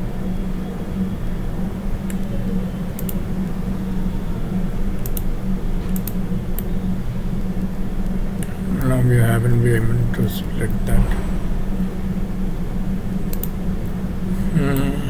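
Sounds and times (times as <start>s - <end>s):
low hum: 7.3s - 15.0s.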